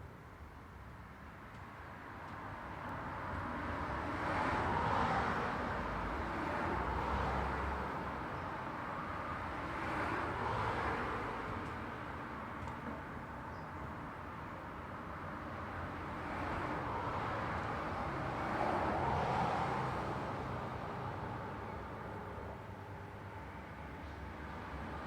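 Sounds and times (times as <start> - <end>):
cars passing: 3.1 - 11.6, 15.7 - 22.3.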